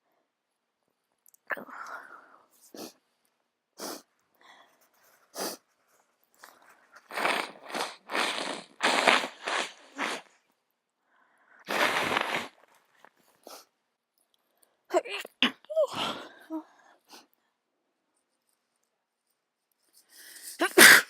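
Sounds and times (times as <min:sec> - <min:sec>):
person sniffing: 0:03.8 - 0:04.1, 0:05.3 - 0:05.6, 0:07.0 - 0:10.3, 0:11.7 - 0:12.6, 0:13.4 - 0:13.7
person sneezing: 0:07.1 - 0:10.3, 0:11.7 - 0:12.6, 0:20.6 - 0:21.0.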